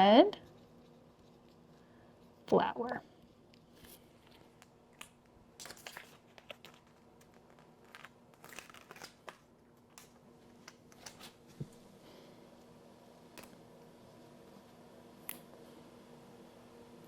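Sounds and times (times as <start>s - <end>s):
sticker label crinkling: 3.7s - 11.4s.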